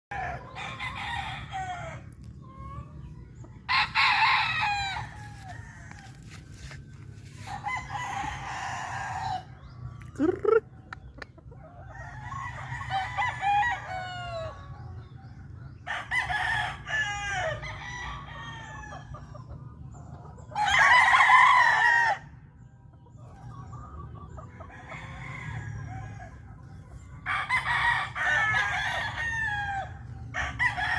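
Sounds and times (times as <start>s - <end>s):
chicken clucking: 0.1s - 16.3s, 18.3s - 21.0s, 22.2s - 30.9s
rooster crowing: 7.4s - 9.5s, 27.2s - 30.9s.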